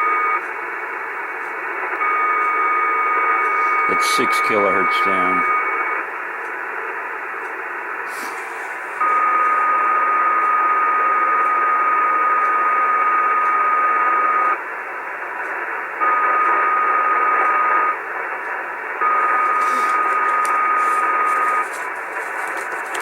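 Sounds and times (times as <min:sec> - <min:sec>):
radio band hiss: 0:00.6 - 0:10.4, 0:13.1 - 0:23.0
interfering high tone with hum: 0:01.0 - 0:06.0, 0:08.1 - 0:14.6, 0:19.0 - 0:21.8.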